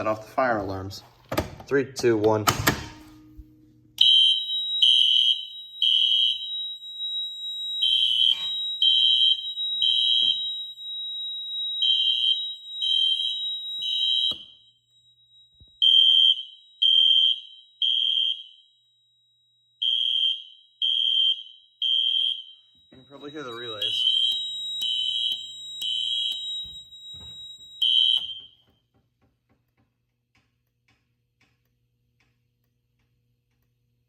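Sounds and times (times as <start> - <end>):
fire alarm horn blasts: 4.0 - 28.7
steady high piezo beep: 21.9 - 28.6.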